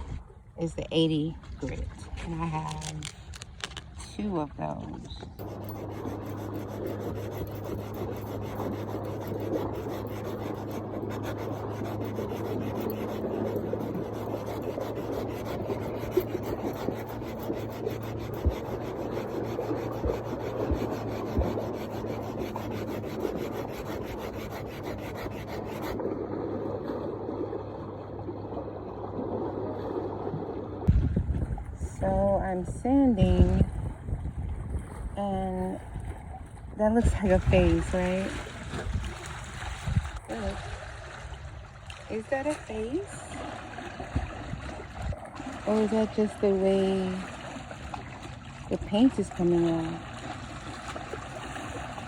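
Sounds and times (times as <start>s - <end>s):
steady low hum: 0.0s - 52.0s
sandpaper rasping on painted drum: 5.4s - 26.0s.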